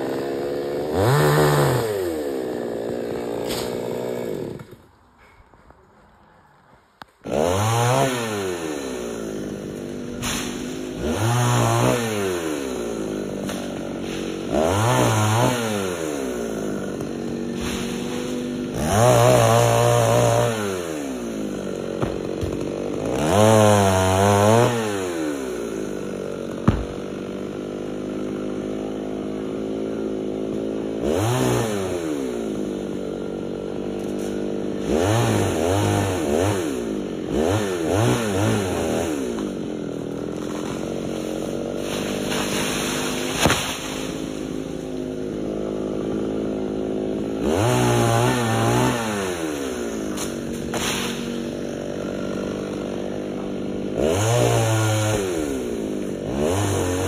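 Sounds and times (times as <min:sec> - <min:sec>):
chainsaw idling and revving: 0:00.0 - 0:05.0, 0:07.2 - 0:57.0
sharp knocks: 0:26.6 - 0:27.0.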